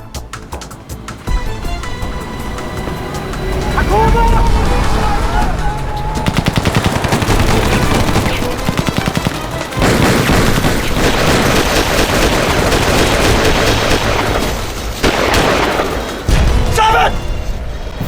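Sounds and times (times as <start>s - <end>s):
automatic gunfire: 6.2s - 16.6s.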